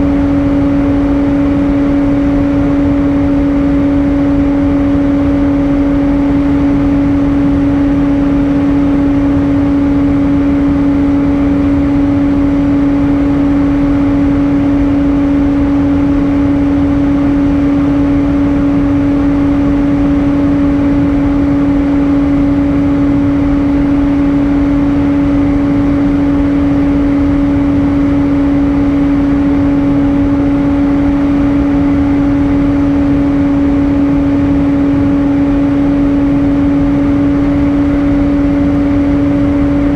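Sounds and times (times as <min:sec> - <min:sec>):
airliner cabin noise in cruise: 0:00.0 - 0:39.9.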